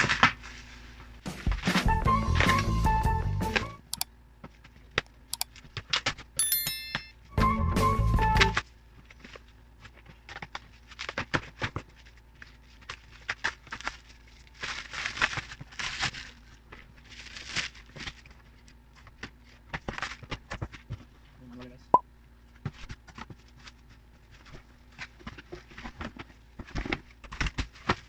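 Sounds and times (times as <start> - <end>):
plastic wrapping crinkling: 12.8 - 18.3.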